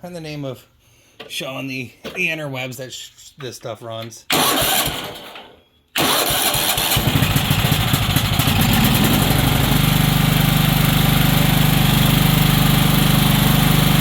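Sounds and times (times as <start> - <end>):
riding mower engine running: 6.0 - 14.0.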